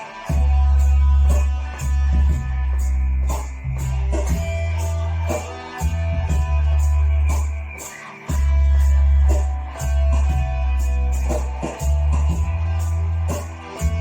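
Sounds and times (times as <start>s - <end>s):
guitar music: 0.0s - 14.0s
deep sustained bass line: 0.3s - 14.0s.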